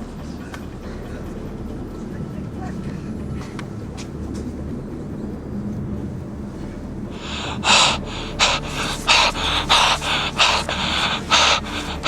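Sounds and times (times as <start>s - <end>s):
steady low hum: 0.0s - 12.0s
person gasping for breath: 7.1s - 12.0s.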